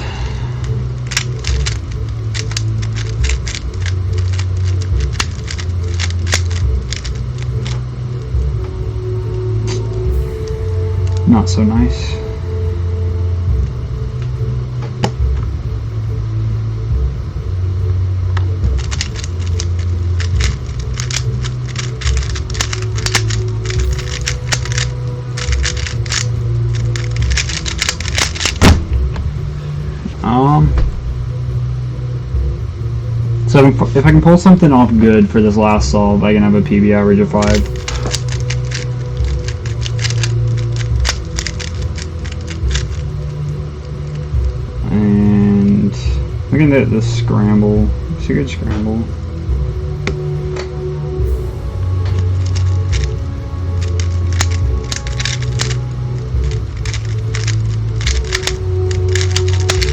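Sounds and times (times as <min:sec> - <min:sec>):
steady low hum: 0:00.0 - 0:59.9
plastic puzzle cube clicking: 0:00.6 - 0:08.3, 0:18.7 - 0:28.8, 0:37.4 - 0:43.3, 0:52.1 - 0:59.9.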